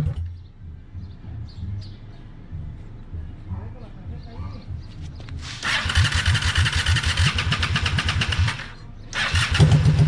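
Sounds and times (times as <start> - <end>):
electric starter cranking engine: 5.4 - 10.0.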